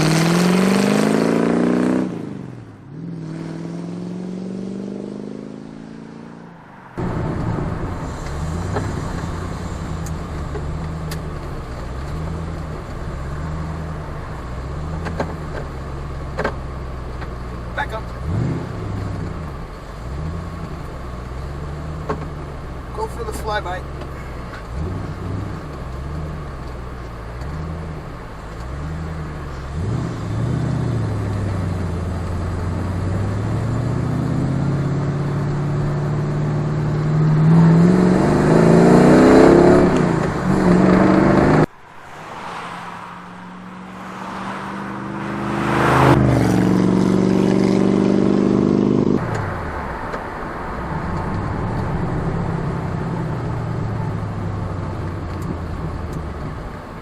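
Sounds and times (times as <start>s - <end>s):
sports car revving past: 0.0s - 10.2s, 28.7s - 50.0s.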